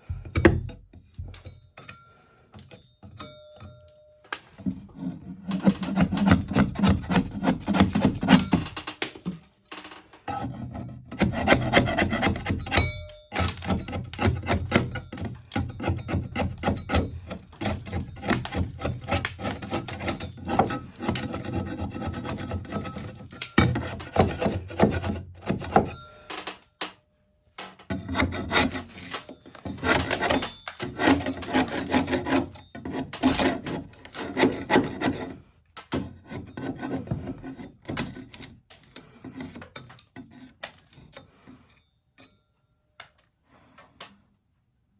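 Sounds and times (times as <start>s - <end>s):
metal spatula scraping plaster: 4.5s - 8.8s, 10.2s - 26.3s, 27.9s - 41.9s.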